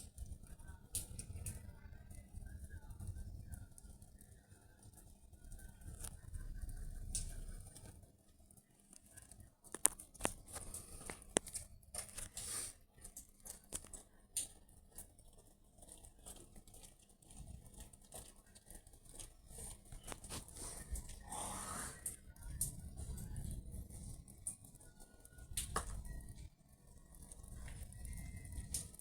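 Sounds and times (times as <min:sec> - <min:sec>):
rain pattering: 0:00.0 - 0:29.0.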